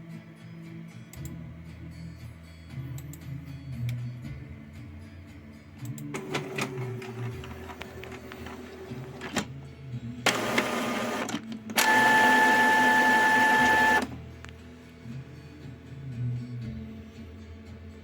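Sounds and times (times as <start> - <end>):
printer motor hum with clicks: 10.3 - 14.2.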